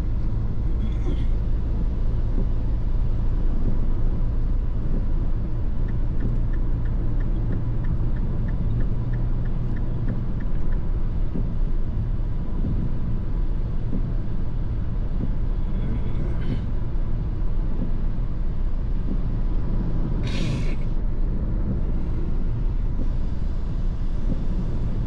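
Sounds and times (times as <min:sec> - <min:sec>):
engine and road rumble: 0:00.0 - 0:25.0
light ticking: 0:01.1 - 0:15.4.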